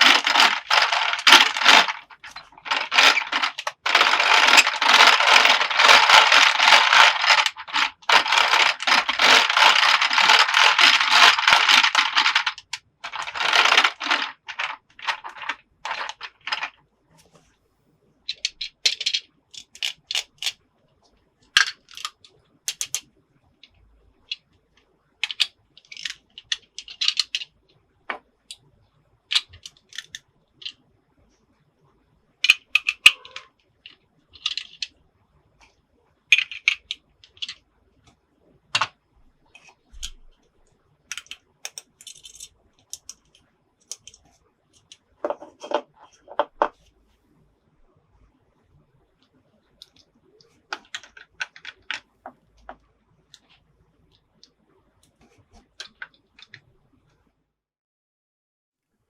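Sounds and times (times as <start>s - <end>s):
toy pieces clicking and tapping: 0.0s - 16.7s, 18.3s - 20.6s, 21.6s - 23.0s, 25.2s - 27.6s, 29.3s - 30.8s, 32.4s - 34.9s, 36.3s - 37.6s, 41.1s - 46.7s, 50.7s - 52.0s
plastic toy pieces clattering: 0.0s - 16.8s, 18.3s - 20.6s, 21.6s - 23.0s, 25.2s - 27.6s, 29.3s - 30.8s, 32.4s - 33.5s, 34.4s - 34.9s, 36.3s - 37.6s, 38.8s - 39.0s, 41.1s - 46.7s, 50.7s - 52.1s.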